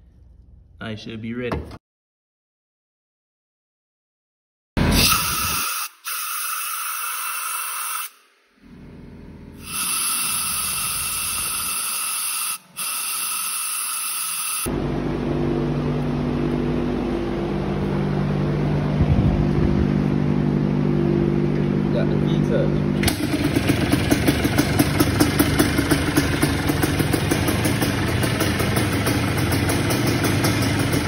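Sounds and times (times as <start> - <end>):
loud steady hiss: 9.6 - 14.7
two-stroke engine running: 22.0 - 31.0.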